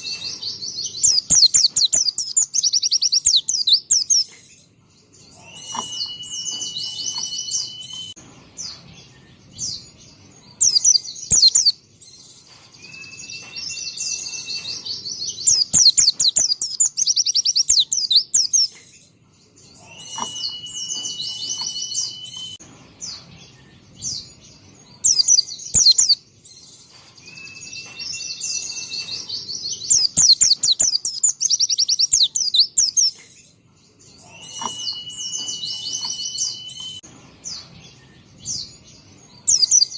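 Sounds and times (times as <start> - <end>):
bird twittering trills: 0.0 - 39.9.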